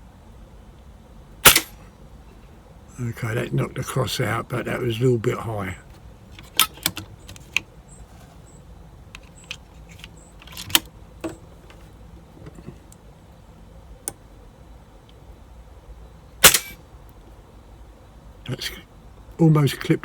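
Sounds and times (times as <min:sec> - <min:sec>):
air rifle shot: 0:01.4 - 0:01.8, 0:16.4 - 0:16.8
air rifle action clicks: 0:06.4 - 0:07.7, 0:09.2 - 0:10.9, 0:16.4 - 0:16.8.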